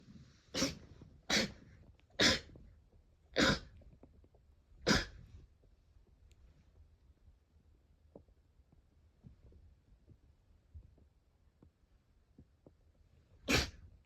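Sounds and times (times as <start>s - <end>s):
sharp sneezes: 0.5s - 1.6s, 2.2s - 2.5s, 3.4s - 3.7s, 4.9s - 5.2s, 13.4s - 13.9s.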